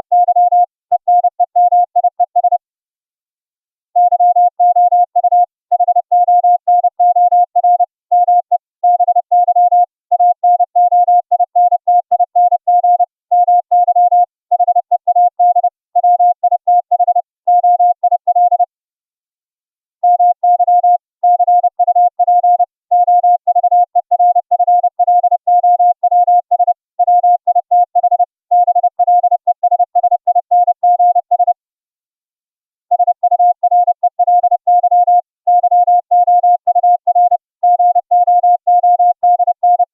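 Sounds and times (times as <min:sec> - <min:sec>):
morse code tone: 0:20.0 - 0:31.6, 0:32.9 - 0:39.9.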